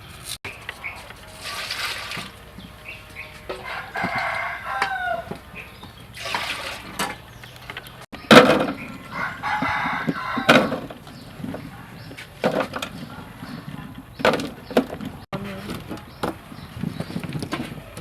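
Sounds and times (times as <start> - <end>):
chickens calling: 0.0 - 18.0
rooster calling: 0.5 - 12.1.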